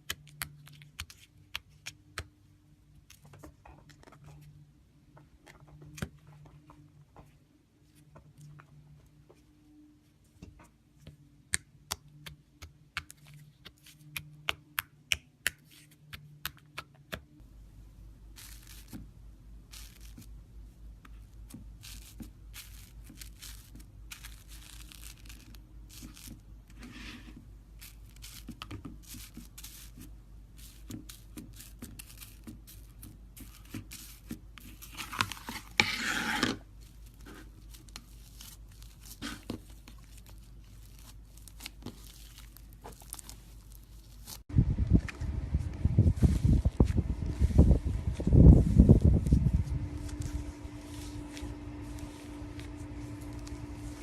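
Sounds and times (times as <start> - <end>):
low steady hum: 0.0 - 15.1, 17.2 - 54.0
slime tearing and squishing: 21.8 - 26.4, 30.6 - 44.4.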